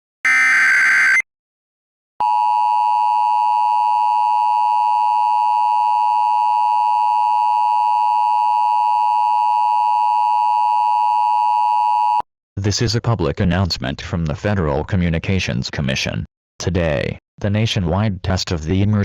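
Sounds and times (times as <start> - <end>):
two-tone electronic alarm: 0.2 - 1.3.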